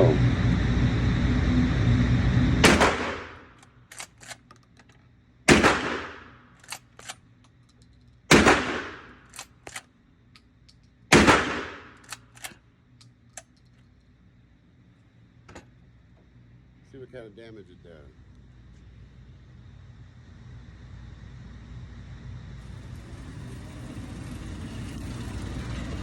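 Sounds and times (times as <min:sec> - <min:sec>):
shotgun shots: 0:02.6 - 0:04.5, 0:05.5 - 0:07.2, 0:08.3 - 0:09.8, 0:11.1 - 0:12.6.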